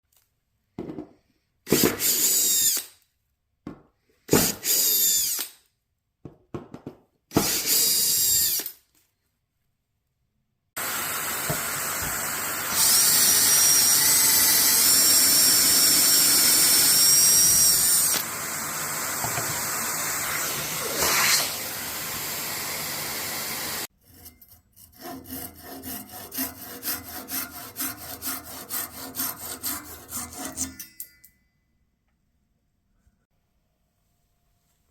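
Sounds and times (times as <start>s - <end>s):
power drill drilling wood: 1.7s - 2.9s, 4.4s - 5.5s, 7.4s - 8.7s, 10.8s - 23.9s
scraping strokes on wood: 24.0s - 30.8s.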